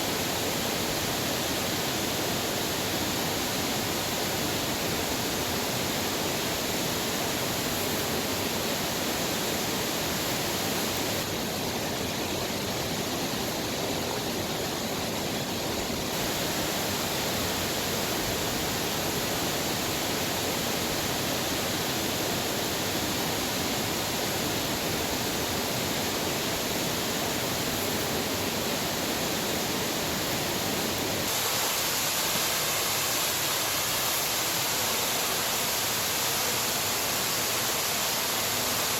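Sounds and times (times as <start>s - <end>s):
waterfall rushing: 0.0s - 38.9s.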